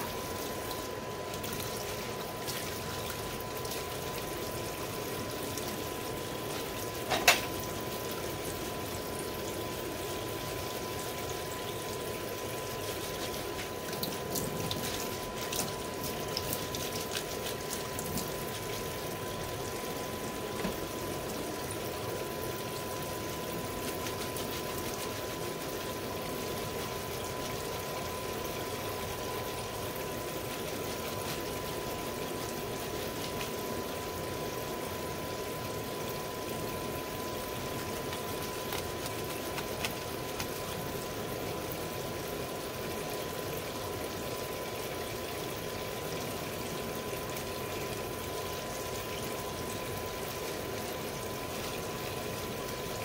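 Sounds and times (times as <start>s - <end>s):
water running and splashing: 0.0s - 53.0s.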